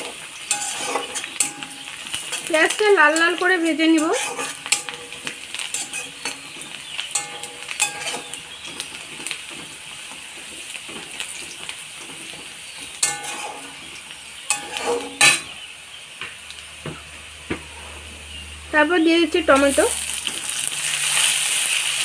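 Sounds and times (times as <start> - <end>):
spatula scraping pan: 0.0 - 15.7, 16.8 - 22.0
onions sizzling in oil: 0.0 - 22.0.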